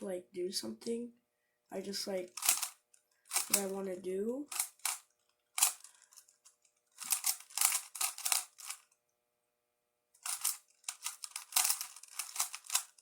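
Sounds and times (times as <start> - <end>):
plastic puzzle clicking turns: 2.3 - 3.7, 4.5 - 9.0, 10.2 - 13.0.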